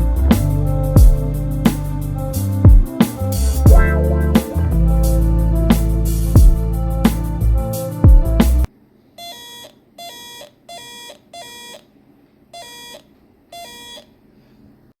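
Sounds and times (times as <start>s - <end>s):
electronic doorbell buzzy tone: 9.2s - 11.9s, 12.6s - 14.1s.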